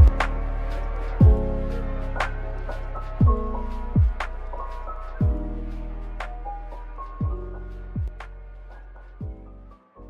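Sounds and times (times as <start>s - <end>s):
deep bass kicks dropping in pitch: 0.0s - 0.5s, 1.1s - 1.6s, 3.2s - 4.5s
lo-fi hip-hop beat: 0.0s - 9.8s.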